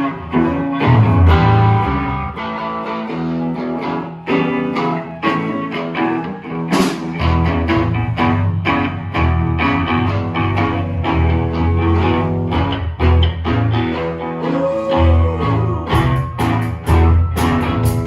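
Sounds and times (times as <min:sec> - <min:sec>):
band playing led by guitar: 0:00.0 - 0:18.0
deep bass line: 0:00.4 - 0:02.4, 0:07.2 - 0:14.0, 0:14.9 - 0:18.0.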